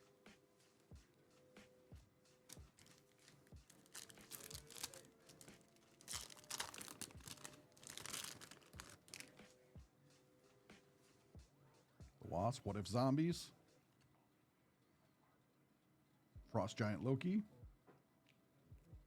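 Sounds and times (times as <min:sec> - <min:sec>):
card pack wrappers crinkling: 0:02.5 - 0:09.3.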